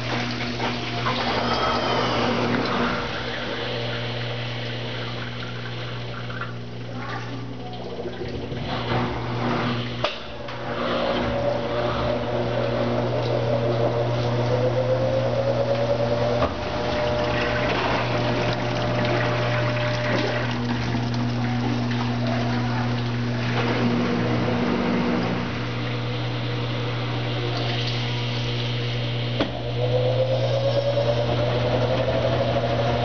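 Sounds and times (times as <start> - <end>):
rushing water: 0.0 - 9.4, 12.2 - 26.0
washing machine drain pump: 0.0 - 33.0.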